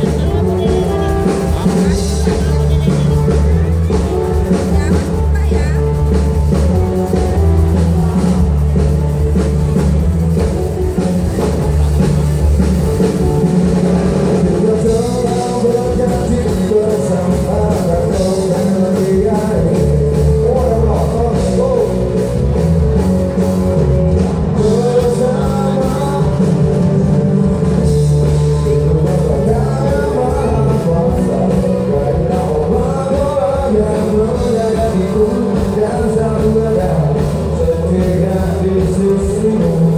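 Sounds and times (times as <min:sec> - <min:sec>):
bass guitar: 0:00.0 - 0:39.9
drums: 0:00.0 - 0:39.9
electric guitar: 0:00.0 - 0:39.9
singer: 0:14.3 - 0:39.9.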